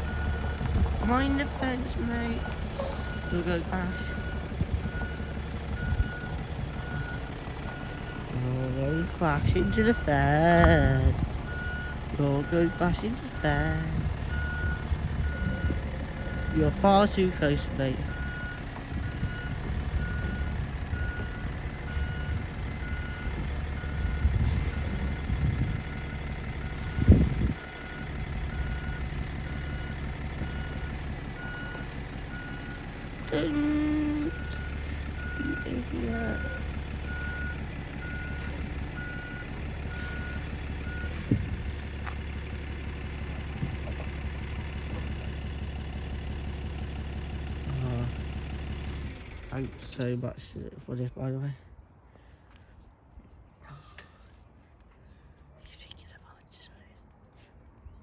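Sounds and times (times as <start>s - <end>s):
reversing alarm beeping: 0.0s - 41.5s
diesel engine rumble: 0.0s - 58.0s.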